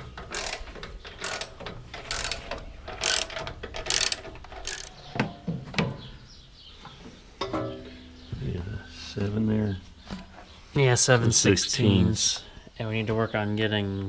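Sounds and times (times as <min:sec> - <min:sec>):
ratchet wrench clicking: 0:00.3 - 0:04.9
sharp metal knocks: 0:07.4 - 0:08.4.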